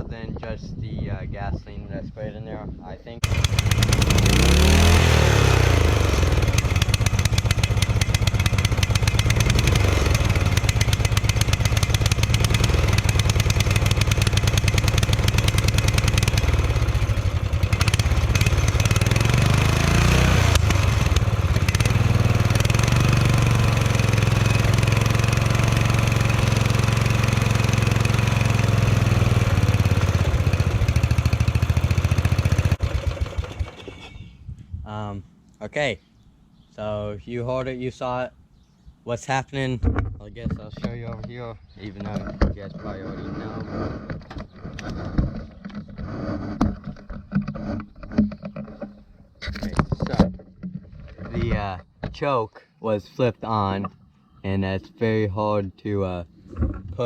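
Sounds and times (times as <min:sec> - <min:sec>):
lawn mower engine running rough: 0:03.2 - 0:34.2.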